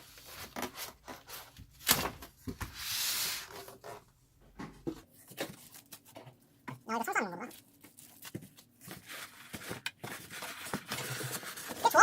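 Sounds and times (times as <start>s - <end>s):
scraping rustle of packaging: 0.0s - 4.0s, 7.4s - 12.0s
packaging knocks and rubbing: 7.8s - 11.8s.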